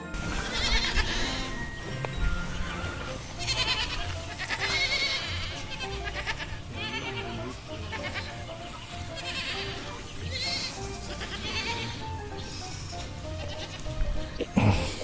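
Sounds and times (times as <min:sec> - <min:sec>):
background music: 0:00.0 - 0:15.0
baby goat bleating: 0:00.3 - 0:01.6, 0:03.4 - 0:08.4, 0:09.1 - 0:14.0.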